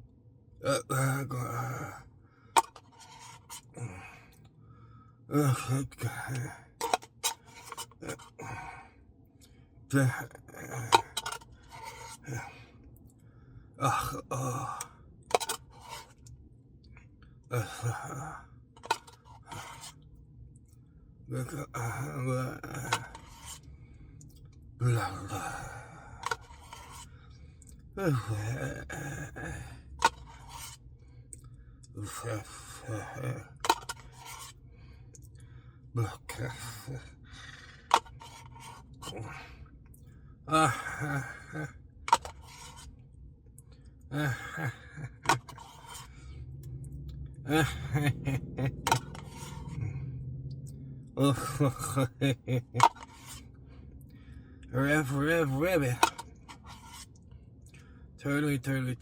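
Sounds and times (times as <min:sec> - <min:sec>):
man mumbling and humming: 0:00.6 - 0:02.0, 0:03.7 - 0:04.3, 0:05.3 - 0:07.0, 0:08.0 - 0:08.8, 0:09.9 - 0:11.4, 0:12.2 - 0:12.6, 0:13.8 - 0:15.5, 0:17.5 - 0:18.4, 0:21.3 - 0:23.6, 0:24.8 - 0:26.4, 0:27.9 - 0:30.1, 0:32.0 - 0:34.4, 0:36.0 - 0:38.0, 0:39.0 - 0:39.6, 0:40.5 - 0:42.3, 0:44.1 - 0:46.3, 0:47.4 - 0:50.2, 0:51.1 - 0:53.0, 0:54.7 - 0:56.2
man sighing and groaning: 0:00.6 - 0:02.0, 0:03.7 - 0:04.4, 0:05.3 - 0:06.7, 0:08.0 - 0:08.9, 0:09.9 - 0:11.4, 0:12.2 - 0:12.7, 0:13.8 - 0:14.9, 0:17.5 - 0:18.4, 0:21.3 - 0:23.2, 0:24.8 - 0:26.4, 0:28.0 - 0:30.1, 0:32.0 - 0:33.8, 0:36.0 - 0:38.0, 0:39.0 - 0:39.6, 0:40.5 - 0:42.3, 0:44.1 - 0:46.3, 0:47.4 - 0:50.2, 0:51.2 - 0:53.0
spoon scraping in a cup: 0:02.6 - 0:03.7, 0:06.8 - 0:08.3, 0:10.8 - 0:12.2, 0:15.3 - 0:16.2, 0:18.8 - 0:20.0, 0:22.8 - 0:23.7, 0:26.2 - 0:27.1, 0:30.0 - 0:30.8, 0:33.6 - 0:34.6, 0:37.8 - 0:39.1, 0:42.1 - 0:42.9, 0:45.3 - 0:46.1, 0:48.7 - 0:49.8, 0:52.8 - 0:53.4, 0:55.9 - 0:57.2.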